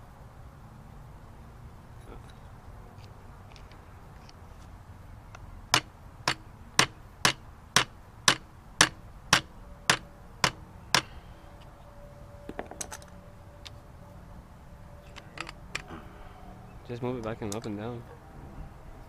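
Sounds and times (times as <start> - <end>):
hammer striking metal: 5.7 - 11.1.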